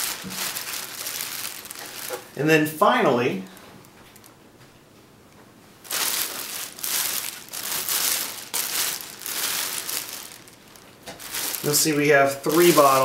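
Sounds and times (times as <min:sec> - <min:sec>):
packing material rustling: 0:00.0 - 0:02.4, 0:05.8 - 0:13.0.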